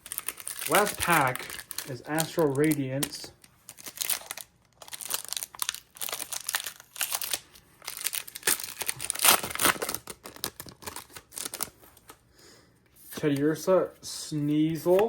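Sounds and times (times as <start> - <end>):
foil wrapper tearing and crinkling: 0.0 - 11.8.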